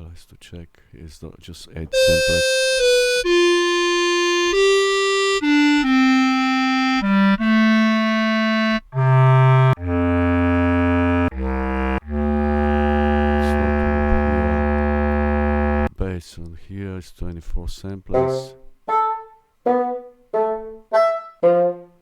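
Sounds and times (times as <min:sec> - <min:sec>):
basset horn held notes: 0:01.9 - 0:15.9.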